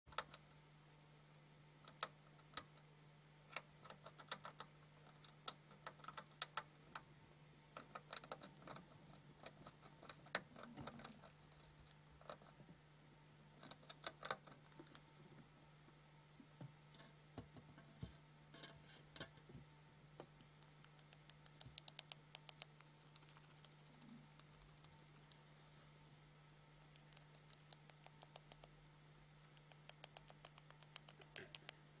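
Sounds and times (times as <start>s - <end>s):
hamster chattering teeth: 20.4s - 25.4s, 26.8s - 28.8s, 29.5s - 31.8s.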